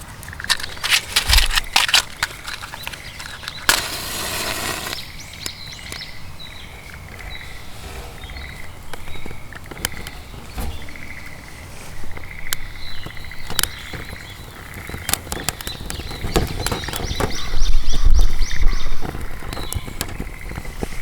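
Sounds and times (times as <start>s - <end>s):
birds chirping faintly: 0.0s - 21.0s
rush of hiss: 3.7s - 5.2s
clicks and knocks: 6.8s - 17.6s.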